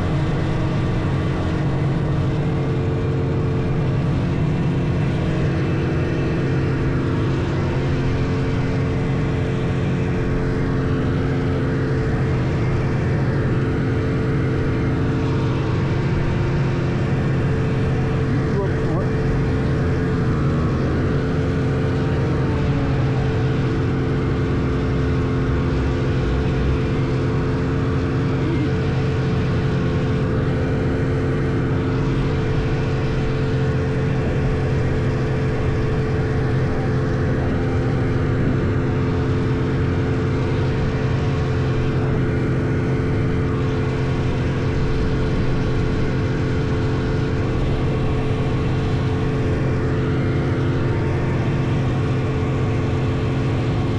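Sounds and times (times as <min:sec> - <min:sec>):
snowmobile engine running steadily: 0:00.0 - 0:53.9.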